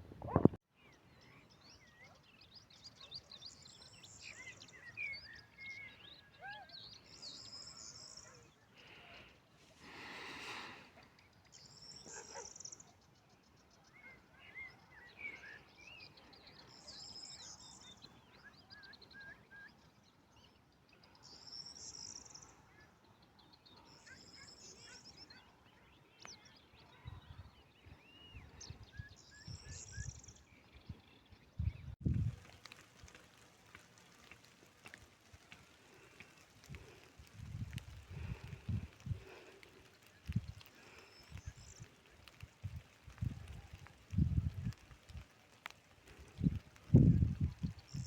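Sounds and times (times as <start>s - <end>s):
songbirds warbling: 0.3s - 48.0s.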